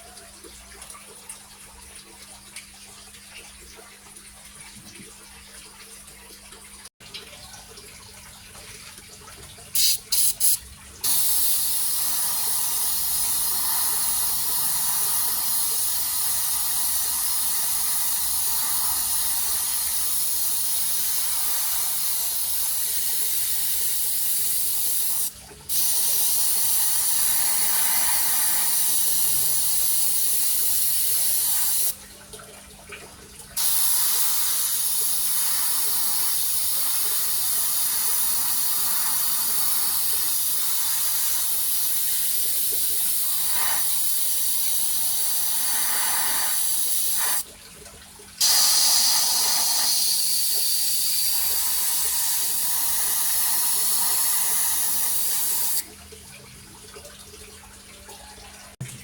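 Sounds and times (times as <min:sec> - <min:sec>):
airbrush spraying hiss: 0:09.8 - 0:31.9, 0:33.6 - 0:47.4, 0:48.4 - 0:55.8.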